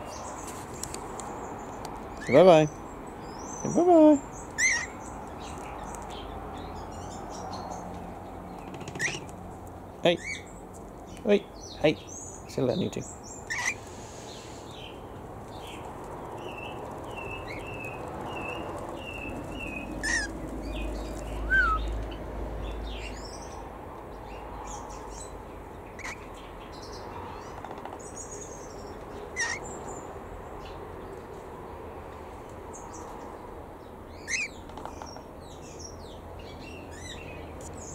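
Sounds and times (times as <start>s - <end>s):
birds chirping and calling: 0.0s - 31.2s, 34.1s - 37.9s
background hiss: 9.7s - 21.4s.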